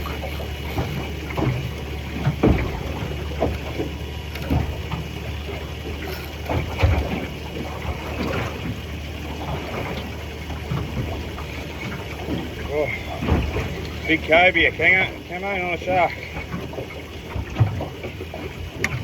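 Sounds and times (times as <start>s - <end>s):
dull knocks and thumps: 0.0s - 14.3s
water slapping boat hull: 0.0s - 19.0s.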